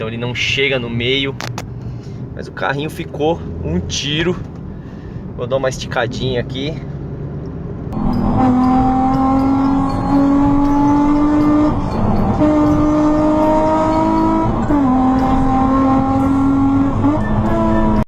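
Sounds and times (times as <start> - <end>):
car engine accelerating: 6.4 - 18.0.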